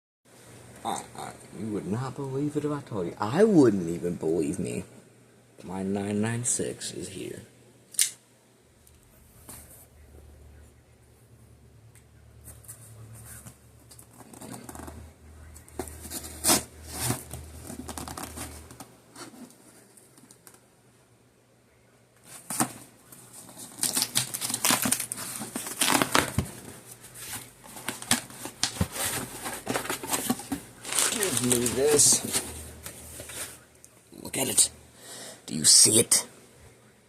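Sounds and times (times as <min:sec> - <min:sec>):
cardboard being handled: 0:22.2 - 0:33.6
packing material crinkling: 0:22.3 - 0:33.7
package tearing: 0:23.4 - 0:26.5, 0:27.7 - 0:32.5.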